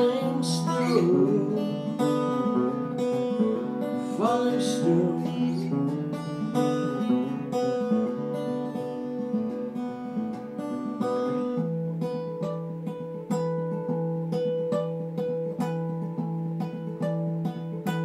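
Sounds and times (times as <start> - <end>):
acoustic guitar playing: 0.0 - 18.0.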